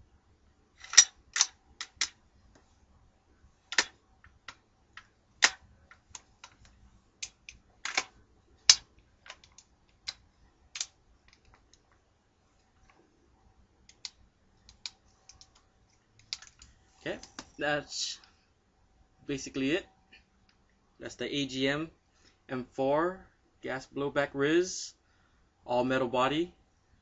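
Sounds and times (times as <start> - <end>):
metal rifle parts clicking: 0.8 - 2.2, 3.7 - 10.2, 10.8 - 11.9, 13.9 - 17.5.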